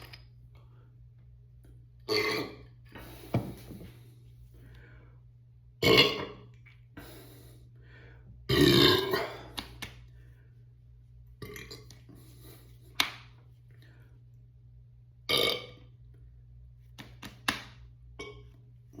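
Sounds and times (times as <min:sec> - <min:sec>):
person burping: 0:02.0 - 0:02.7, 0:05.8 - 0:06.5, 0:08.5 - 0:09.6, 0:11.4 - 0:11.9, 0:15.3 - 0:15.9, 0:18.2 - 0:18.5.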